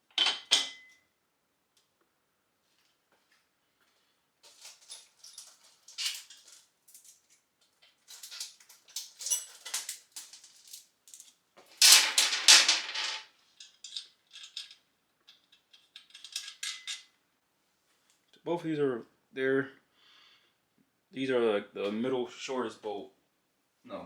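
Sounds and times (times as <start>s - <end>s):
steel bolts clinking and rattling: 11.8s - 17.1s.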